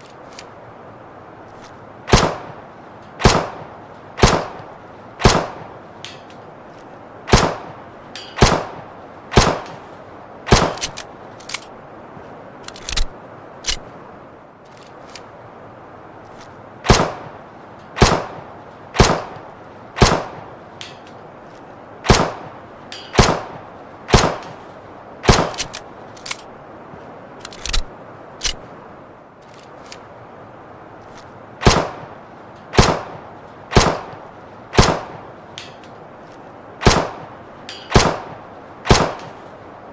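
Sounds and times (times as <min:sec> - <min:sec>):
pistol shots with echo: 0:36.8 - 0:37.2, 0:37.9 - 0:38.3.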